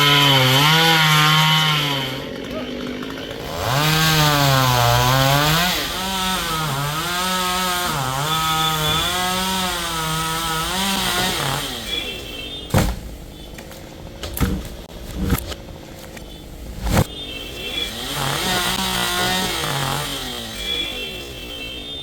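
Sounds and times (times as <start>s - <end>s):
chainsaw cutting wood: 0.0s - 15.7s, 17.8s - 21.3s
sharp knocks: 12.7s - 15.6s.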